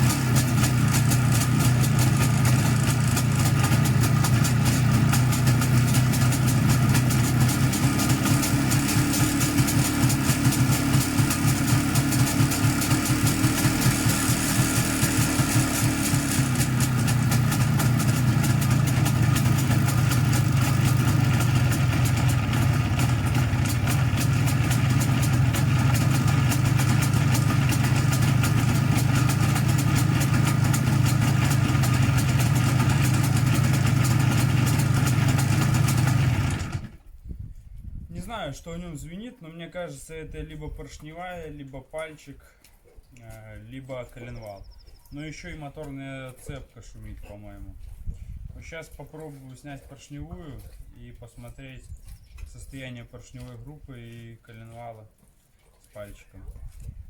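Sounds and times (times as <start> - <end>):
engine ringing and knocking: 0.0 - 37.0
motorcycle engine idling: 0.0 - 37.1.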